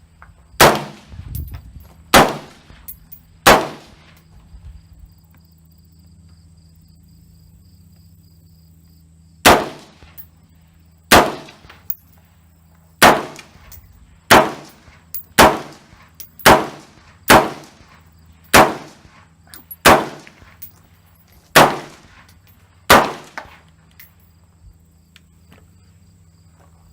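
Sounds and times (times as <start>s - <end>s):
rifle shots with ringing tail: 0.6s - 1.5s, 2.1s - 4.1s, 9.4s - 10.3s, 11.1s - 12.0s, 13.0s - 17.9s, 18.5s - 20.5s, 21.5s - 22.2s, 22.9s - 23.6s.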